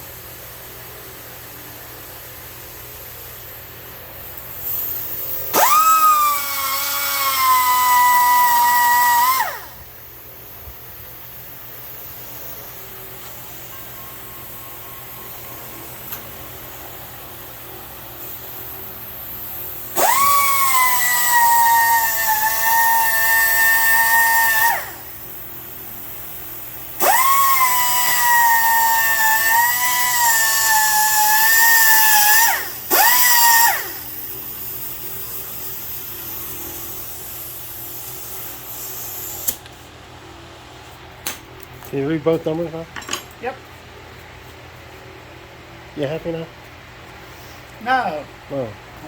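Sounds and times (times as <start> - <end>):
power tool whining: 4.8 - 9.8, 19.9 - 25.1, 27.0 - 34.1.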